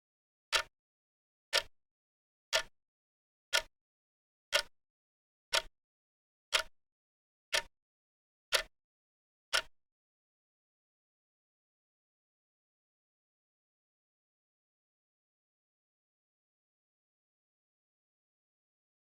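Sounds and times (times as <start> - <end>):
clock ticking: 0.5 - 0.7, 1.5 - 1.7, 2.5 - 2.7, 3.5 - 3.7, 4.5 - 4.7, 5.5 - 5.7, 6.5 - 6.7, 7.5 - 7.7, 8.5 - 8.7, 9.5 - 9.7.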